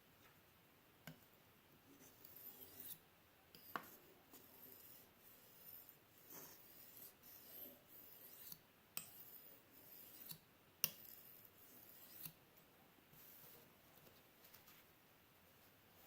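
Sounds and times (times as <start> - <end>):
knife rasping on sharpening stone: 2.0 - 3.0, 3.6 - 12.4.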